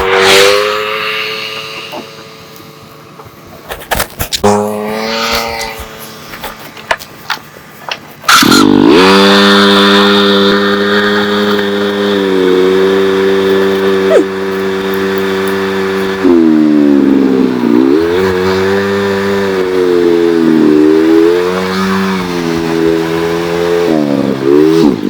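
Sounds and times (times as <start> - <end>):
power tool motor whining: 4.4 - 6.6, 8.3 - 17.0.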